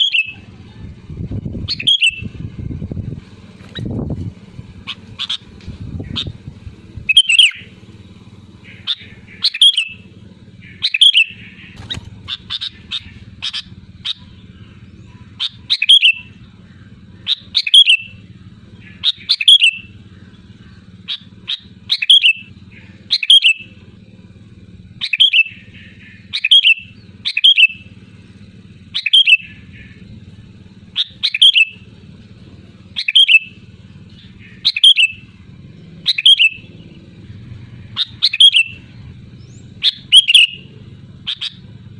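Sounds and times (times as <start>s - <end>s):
bird singing short phrases: 1.7s - 2.3s, 7.1s - 7.8s, 8.6s - 23.8s, 25.0s - 27.9s, 28.9s - 30.2s, 30.9s - 31.9s, 32.9s - 37.0s, 37.9s - 41.6s.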